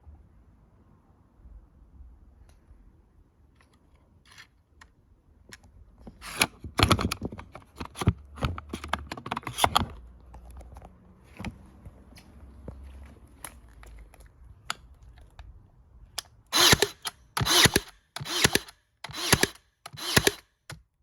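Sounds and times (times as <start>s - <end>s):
nail gun clicks: 16.2s - 20.8s.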